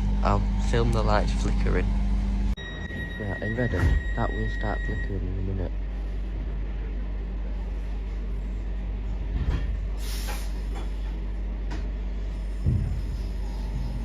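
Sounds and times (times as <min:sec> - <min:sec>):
train cabin low hum: 0:00.0 - 0:14.0
air hiss: 0:10.0 - 0:10.8
low thump: 0:12.6 - 0:13.4.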